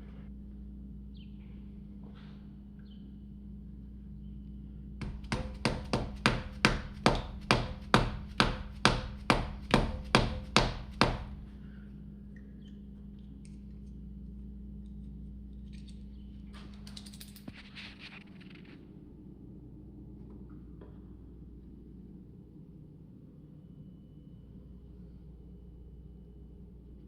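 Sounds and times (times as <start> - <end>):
brief rustle: 15.7 - 18.8.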